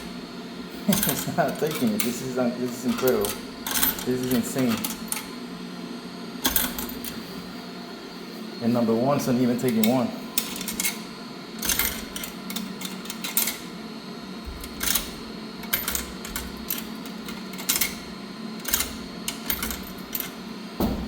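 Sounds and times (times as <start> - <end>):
steady low hum: 0.0 - 21.0
coins clicking in coin slot: 0.9 - 5.3, 6.4 - 7.2, 9.6 - 13.8, 14.5 - 20.4.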